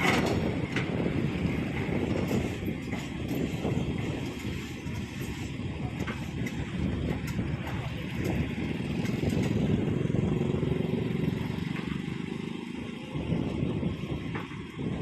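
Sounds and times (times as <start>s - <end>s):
light clatters: 0.0s - 9.8s
heavy engine running: 0.0s - 15.0s.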